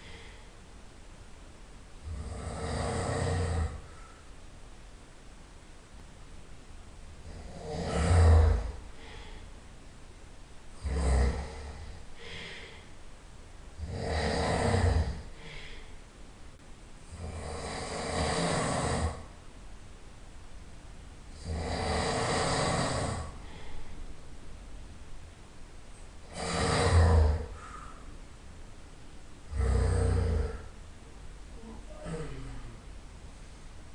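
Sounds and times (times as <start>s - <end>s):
quiet breathing: 0.0s - 1.4s, 2.0s - 4.7s, 7.1s - 19.5s, 21.3s - 33.9s
person snoring loudly: 2.0s - 4.0s, 7.2s - 9.2s, 10.8s - 12.7s, 13.8s - 15.8s, 17.1s - 19.3s, 21.3s - 23.6s, 26.2s - 27.8s, 29.5s - 30.7s, 31.6s - 32.8s.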